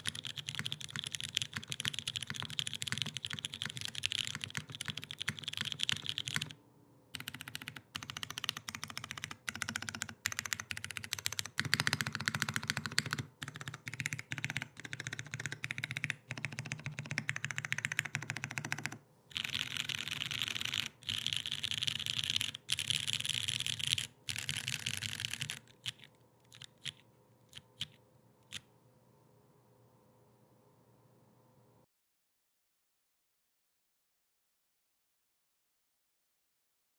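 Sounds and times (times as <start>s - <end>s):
mechanical keyboard typing: 0.0s - 6.6s, 7.2s - 28.6s.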